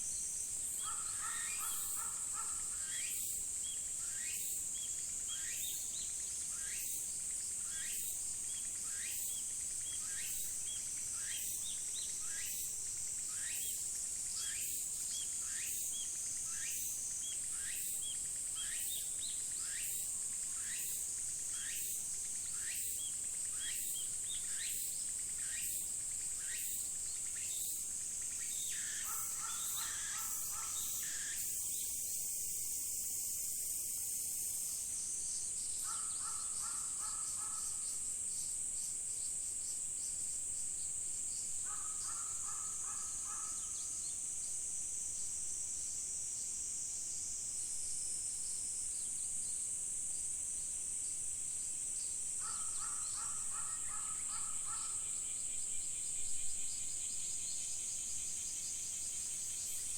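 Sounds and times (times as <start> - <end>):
insects droning: 0.0 - 59.9
bird chirps: 0.8 - 7.0, 22.6 - 32.3.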